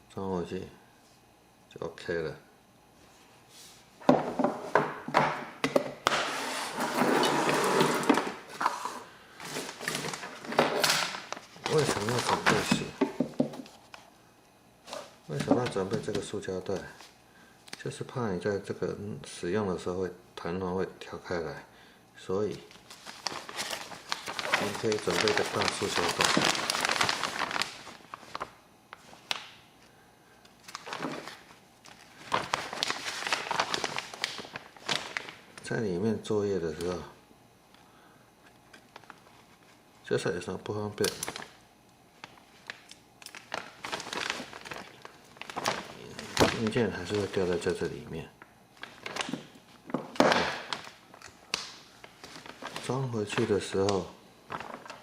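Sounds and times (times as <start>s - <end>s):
plastic bag rustle: 7.4s - 13.0s, 22.7s - 29.5s, 30.6s - 35.7s, 42.2s - 47.9s, 48.7s - 55.0s.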